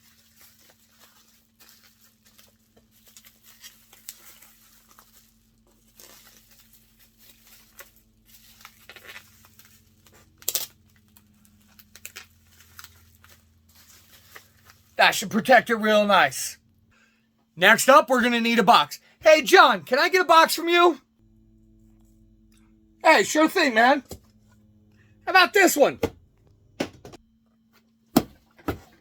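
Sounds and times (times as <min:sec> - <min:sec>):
bubble wrap ripping: 0:00.0 - 0:14.9
bubble wrap crinkling and rustling: 0:00.0 - 0:15.0.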